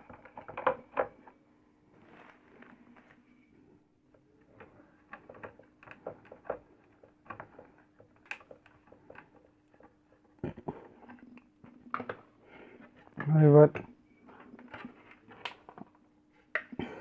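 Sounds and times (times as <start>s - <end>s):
small parts clicking and tapping: 0.0s - 1.2s, 4.1s - 12.2s
faint steady hum: 0.0s - 17.0s.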